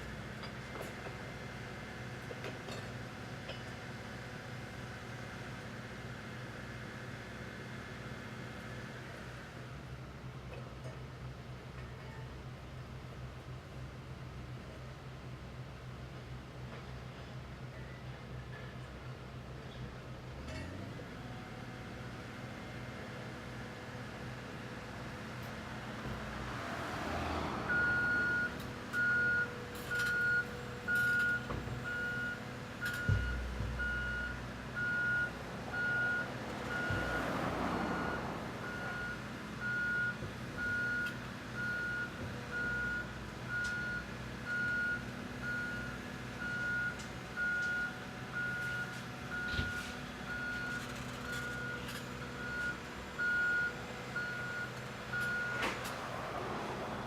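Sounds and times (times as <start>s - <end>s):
diesel engine running: 12.4s - 57.0s.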